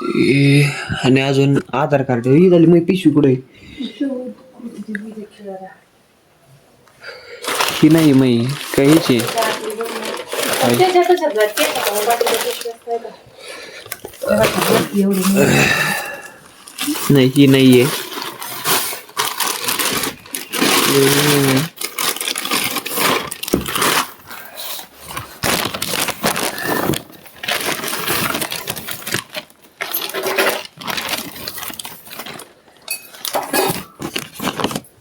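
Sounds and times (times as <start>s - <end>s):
belongings rustling and clattering: 7.4s - 35.0s.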